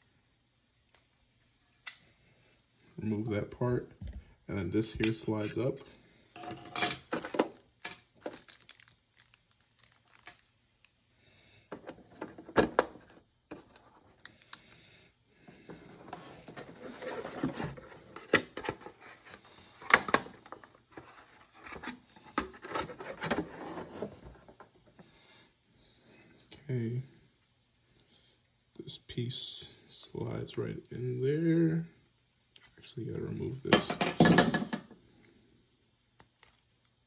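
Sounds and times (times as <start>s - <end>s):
packaging rustling and crinkling: 7.2s - 10.9s, 15.9s - 24.6s.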